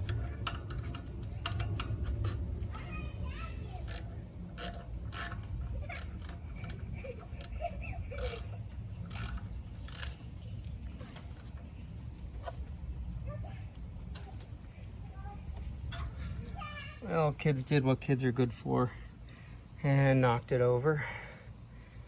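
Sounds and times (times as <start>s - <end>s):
hand tools clicking on metal: 0.0s - 12.7s.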